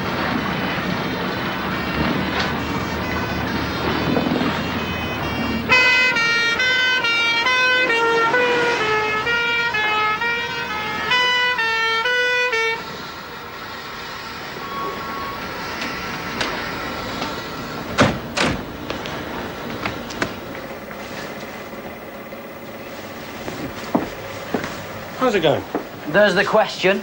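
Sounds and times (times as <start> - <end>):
bagpipes melody: 1.0 - 18.0.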